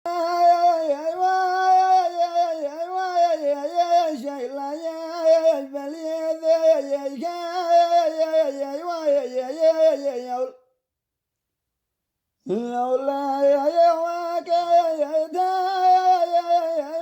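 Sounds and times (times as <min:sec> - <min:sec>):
person singing unaccompanied: 0:00.1 - 0:10.6, 0:12.5 - 0:17.0.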